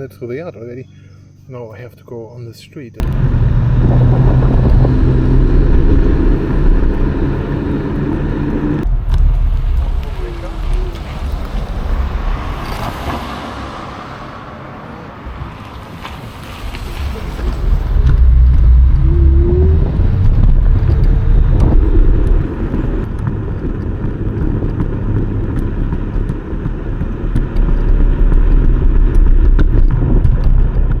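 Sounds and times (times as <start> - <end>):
road and tire noise: 3.0 - 31.0
wind buffeting microphone: 3.0 - 31.0
brief rising whine: 16.6 - 23.0.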